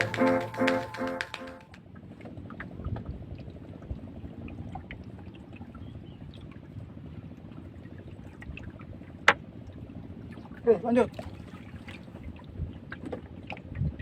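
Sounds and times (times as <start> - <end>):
faint clicks: 0.0 - 1.8
water lapping against boat: 0.0 - 14.0.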